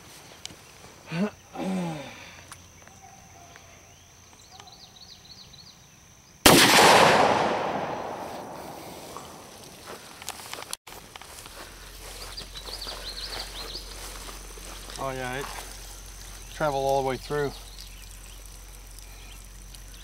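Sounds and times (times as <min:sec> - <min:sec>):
revolver gunshot: 0:06.5 - 0:09.6.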